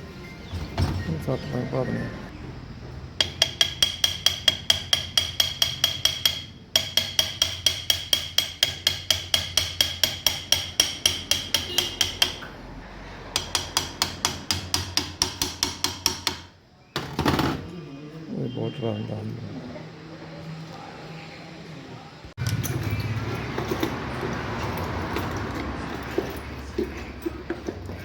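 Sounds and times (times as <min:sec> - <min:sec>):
hammer striking metal: 0:03.2 - 0:12.6, 0:13.3 - 0:16.6.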